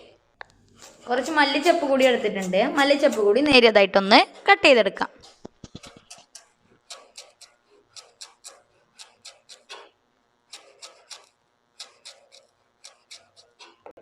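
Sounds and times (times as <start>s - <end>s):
knife chopping on cutting board: 0.8s - 3.6s, 5.2s - 7.4s, 10.6s - 13.9s.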